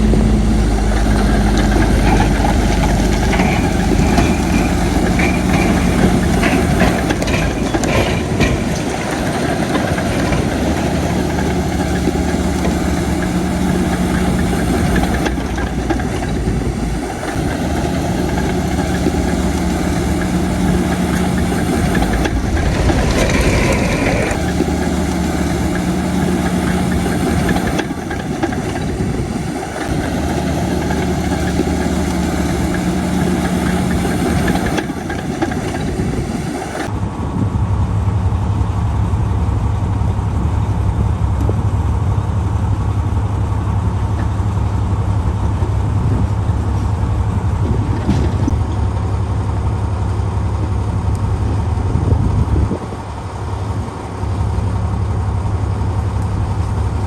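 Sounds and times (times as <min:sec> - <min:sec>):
sharp metallic knocks: 0:00.0 - 0:29.1
bulldozer diesel engine: 0:00.0 - 0:57.0.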